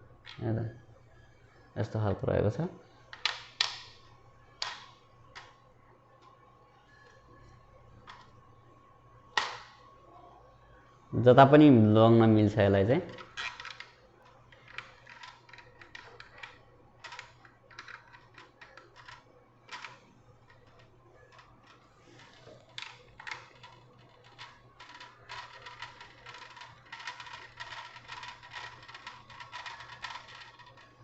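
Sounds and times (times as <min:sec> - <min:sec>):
plastic clicks and rattles: 0:03.1 - 0:04.0, 0:04.6 - 0:05.6, 0:13.1 - 0:31.0.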